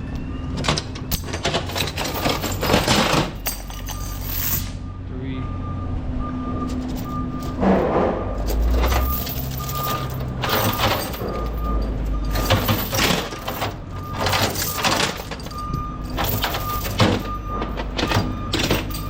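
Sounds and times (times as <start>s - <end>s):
low engine rumble: 0.0s - 19.0s
reversing beeper: 3.8s - 19.0s.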